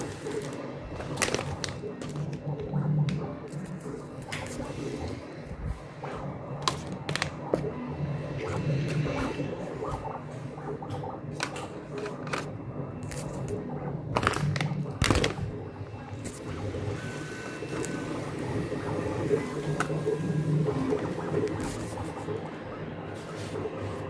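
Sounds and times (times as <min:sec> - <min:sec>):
stepper motors humming and whirring: 0:15.6 - 0:24.0.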